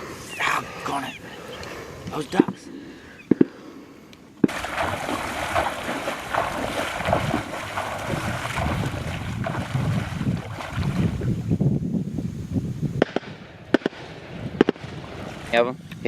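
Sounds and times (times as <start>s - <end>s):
wind buffeting microphone: 4.4s - 16.0s.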